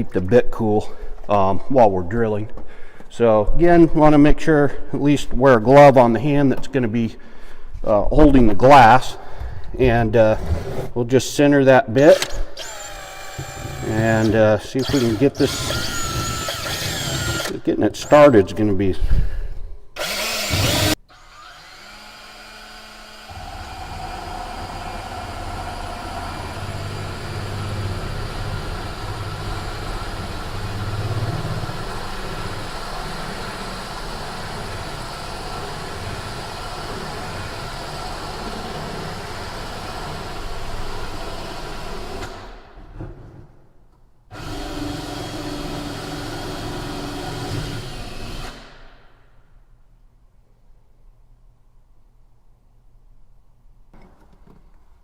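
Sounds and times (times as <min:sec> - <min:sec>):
cordless drill drilling glass: 0:12.6 - 0:17.5, 0:20.0 - 0:31.0, 0:44.4 - 0:48.8.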